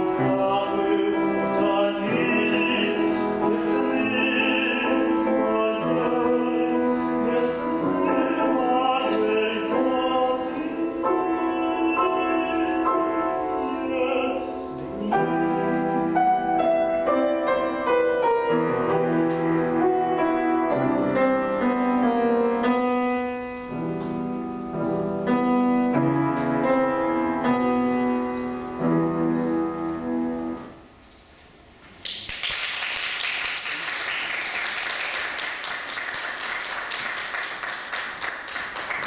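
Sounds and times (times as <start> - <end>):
man singing classical: 0.0 - 24.5
piano accompaniment: 0.0 - 31.8
applause: 32.0 - 39.0.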